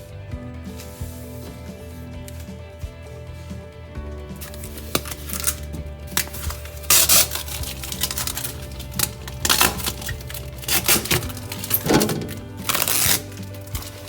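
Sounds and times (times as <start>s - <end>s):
background music: 0.0s - 14.0s
packing tape tearing: 4.4s - 14.0s.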